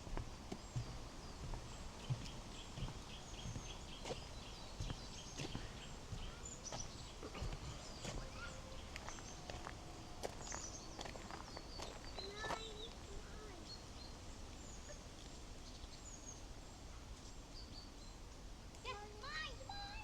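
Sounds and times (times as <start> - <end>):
footsteps on a path: 0.0 - 13.8
songbirds singing and chirping: 0.0 - 20.0.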